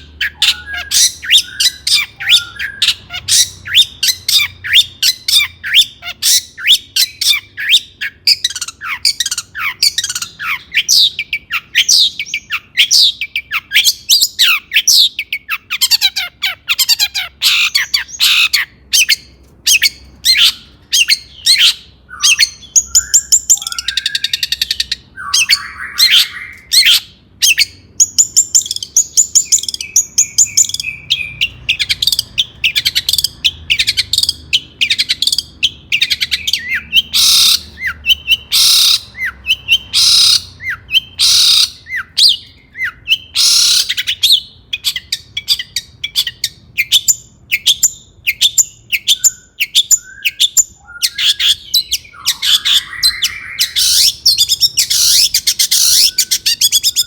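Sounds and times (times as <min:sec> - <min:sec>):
shrike singing: 0:00.0 - 0:57.0.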